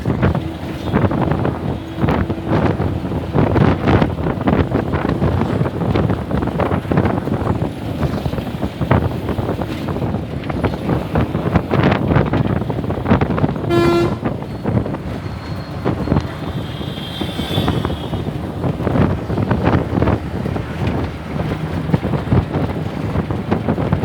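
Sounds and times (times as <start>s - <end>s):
bus rumbling and rattling: 0.0s - 24.0s
bus horn toot: 0.2s - 4.7s, 12.8s - 19.0s.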